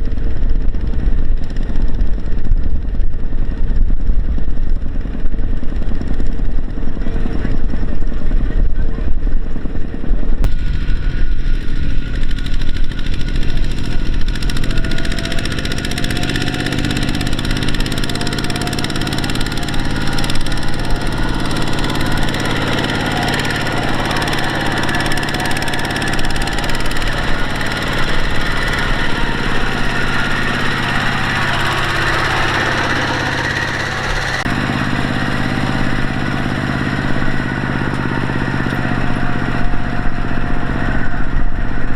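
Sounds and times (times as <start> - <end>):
diesel engine running: 10.4 - 41.9.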